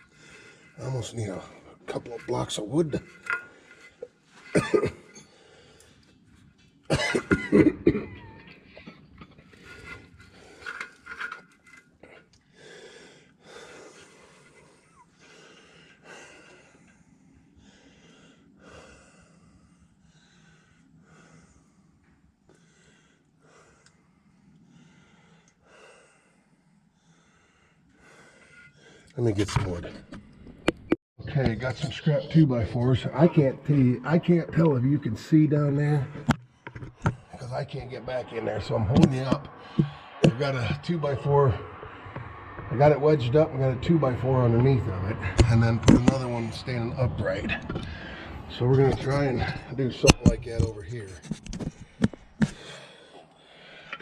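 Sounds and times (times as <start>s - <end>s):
man coughing hard: 4.4s - 5.2s, 6.9s - 8.5s.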